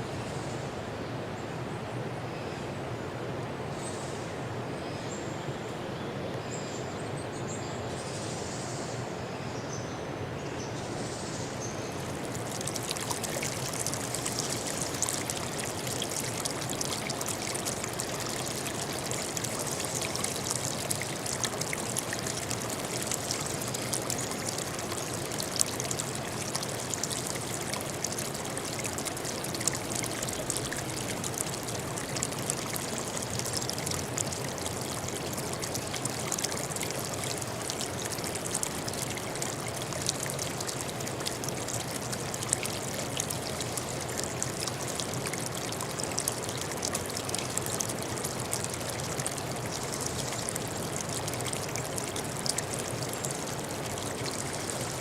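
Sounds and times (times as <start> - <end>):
stream water trickling: 0.0 - 55.0
small water splashes: 11.6 - 55.0.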